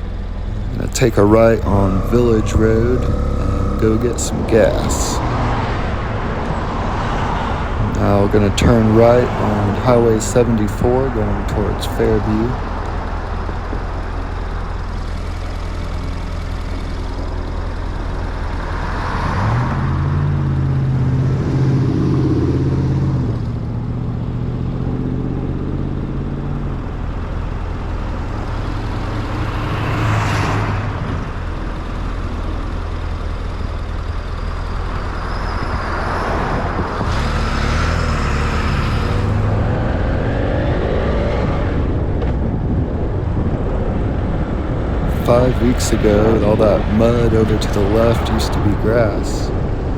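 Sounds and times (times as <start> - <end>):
passing traffic swooshes: 0.0 - 15.1, 27.5 - 32.5, 34.6 - 49.9
vehicle engine and road noise: 0.0 - 49.9.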